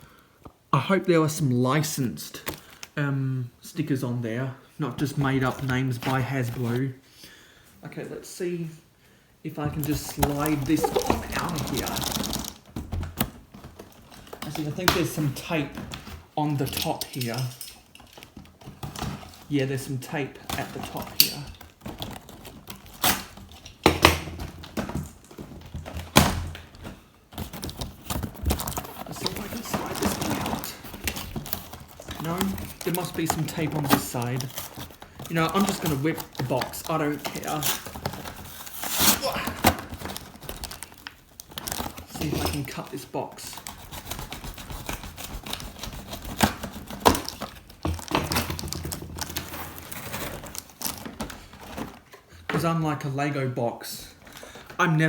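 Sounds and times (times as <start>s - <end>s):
cardboard and plastic scraping: 9.7s - 16.9s, 18.0s - 52.7s.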